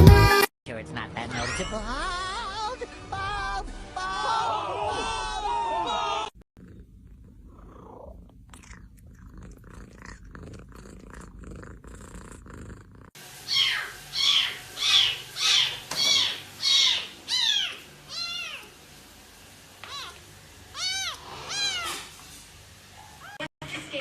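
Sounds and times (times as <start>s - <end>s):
cat purring: 6.6s - 13.2s
cat meowing: 13.5s - 18.7s, 19.8s - 22.0s.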